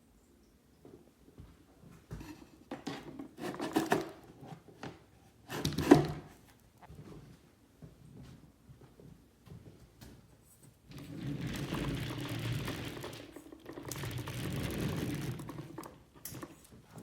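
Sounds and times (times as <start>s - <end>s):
metal cart clattering and knocking: 10.9s - 16.6s.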